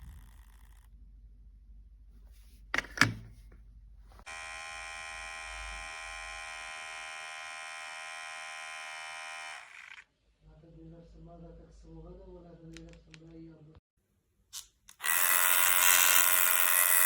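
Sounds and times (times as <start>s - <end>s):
electric hair clipper buzzing: 4.3s - 10.0s, 14.9s - 17.0s.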